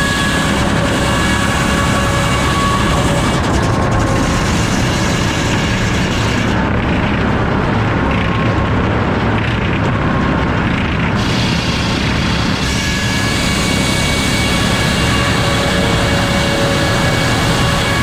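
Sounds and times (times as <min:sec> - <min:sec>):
sawmill machinery drone: 0:00.0 - 0:18.0.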